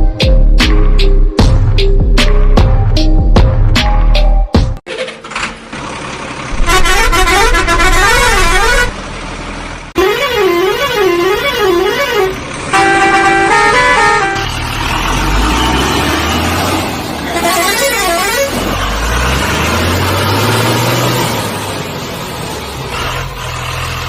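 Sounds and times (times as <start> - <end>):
electronic horn-like tune: 6.6 - 8.9, 10.0 - 14.6.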